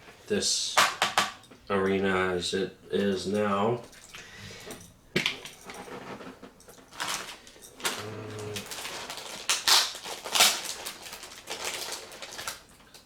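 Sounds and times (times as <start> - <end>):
plastic toy parts clattering: 5.2 - 13.0.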